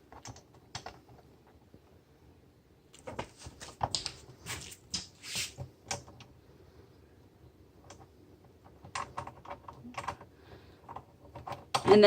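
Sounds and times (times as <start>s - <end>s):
small clicks taps and scrapes: 0.0s - 1.8s, 2.9s - 6.3s, 7.8s - 12.0s.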